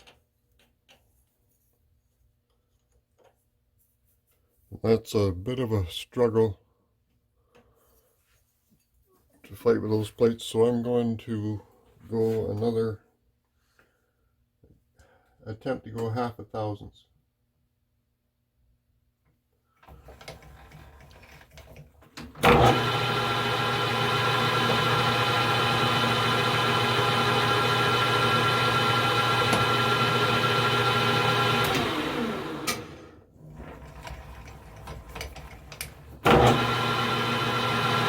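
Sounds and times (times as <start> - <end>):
metal lathe motor hum and whine: 22.5 - 33.0, 36.3 - 38.0.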